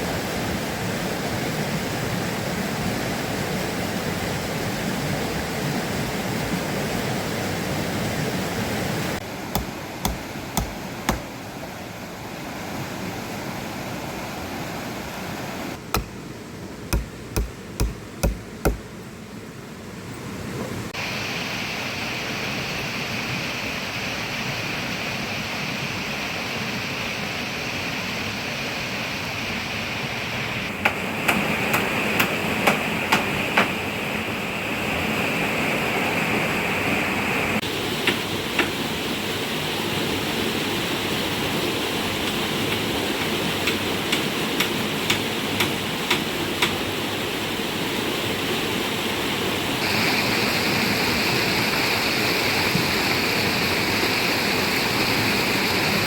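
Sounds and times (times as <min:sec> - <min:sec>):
rushing water: 0:00.0 - 0:56.0
hammering knocks: 0:09.6 - 0:11.3, 0:15.9 - 0:16.2, 0:16.9 - 0:18.9.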